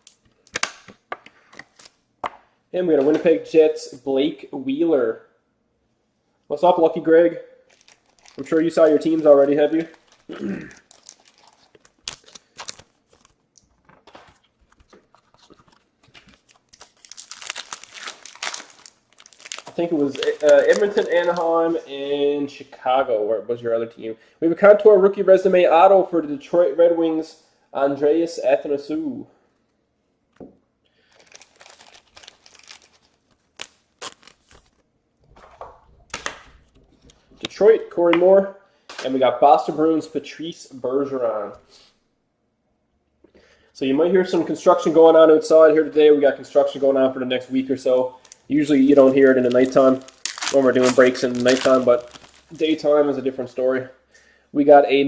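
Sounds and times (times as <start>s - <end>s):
cards and wrappers rustling: 7.7s - 21.8s, 31.0s - 37.7s, 47.8s - 53.5s
wrapper crinkling: 7.7s - 21.8s, 31.0s - 37.6s, 48.1s - 53.2s.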